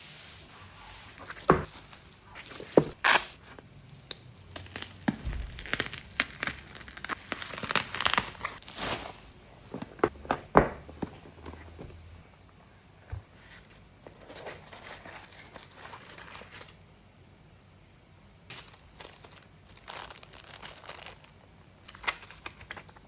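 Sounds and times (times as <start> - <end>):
packaging crinkling and tearing: 2.4 - 9.4, 18.5 - 23.0.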